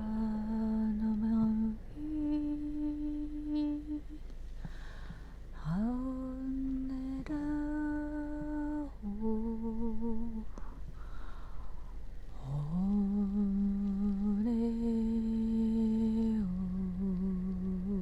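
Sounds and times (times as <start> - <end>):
breath: 4.6 - 5.4, 10.5 - 12.0
person humming long notes: 12.3 - 18.0.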